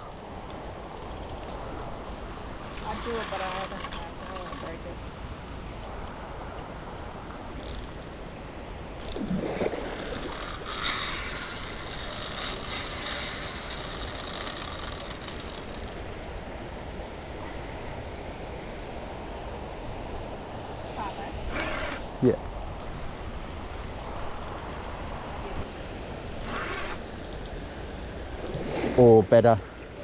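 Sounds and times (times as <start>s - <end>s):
fishing reel clicking: 1.0s - 4.9s, 7.4s - 8.1s, 9.0s - 9.3s, 9.9s - 16.4s, 26.4s - 27.6s.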